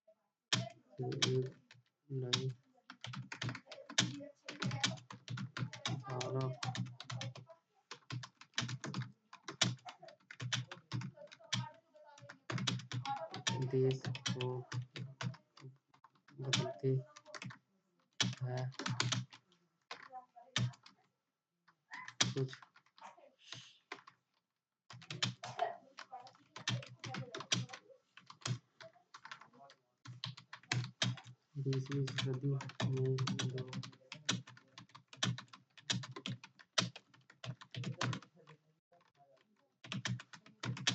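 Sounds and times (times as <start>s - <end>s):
fast typing on a keyboard: 0.5s - 21.0s, 21.9s - 24.2s, 24.9s - 40.9s
keyboard typing clicks: 0.6s - 1.6s, 24.9s - 28.6s, 30.1s - 38.4s, 39.8s - 40.9s.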